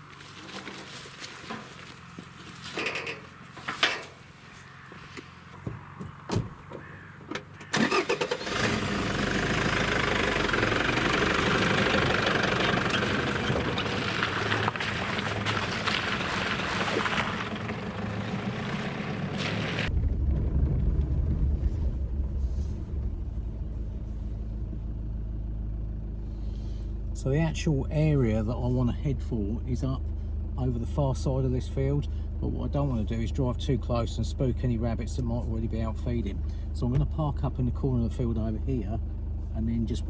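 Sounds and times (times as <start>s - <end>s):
vehicle engine starting and driving: 0.0s - 40.0s
low dull rumble: 9.6s - 39.6s.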